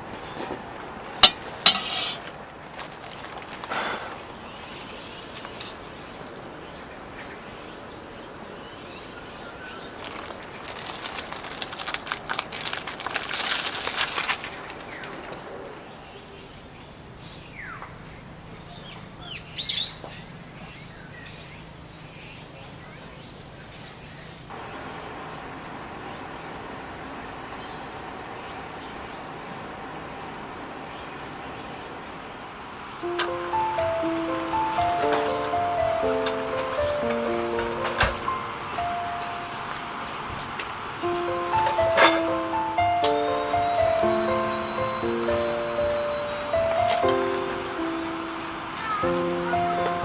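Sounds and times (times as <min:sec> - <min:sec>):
crackly rustling: 0:00.0 - 0:06.5, 0:09.8 - 0:15.6, 0:33.0 - 0:50.0
bird chirping: 0:15.9 - 0:25.1, 0:33.0 - 0:50.0.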